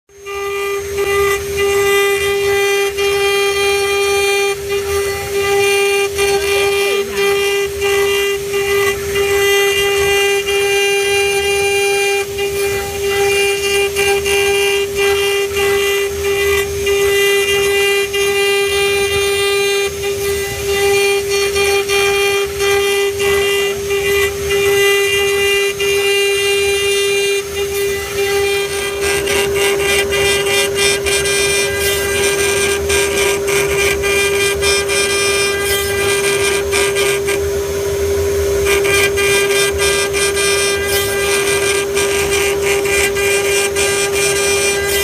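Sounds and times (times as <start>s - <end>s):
bit rasping through wood: 0.1s - 37.6s, 38.5s - 45.0s
router spindle high whine: 0.1s - 45.0s.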